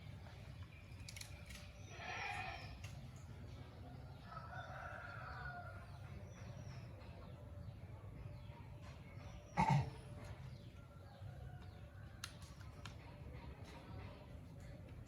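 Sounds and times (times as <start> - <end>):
faint rooster crowing: 4.2 - 6.0.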